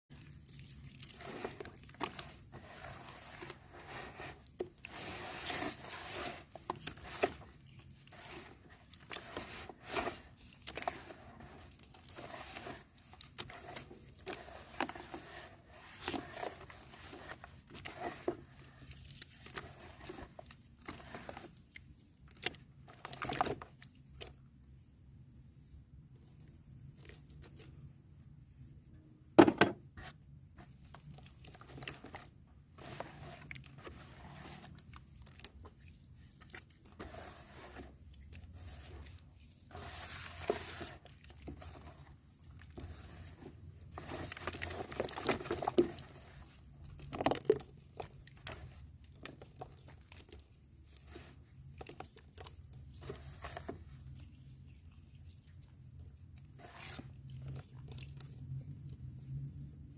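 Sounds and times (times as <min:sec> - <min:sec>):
chalk paste crunching: 0:00.1 - 0:24.3.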